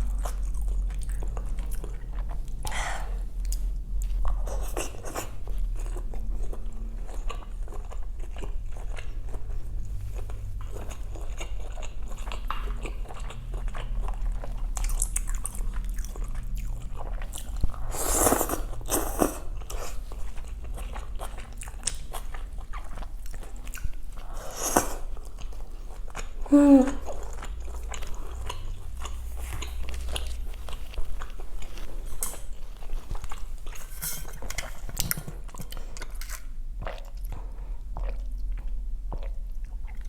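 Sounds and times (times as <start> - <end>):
person chewing and biting food: 27.0 - 33.8.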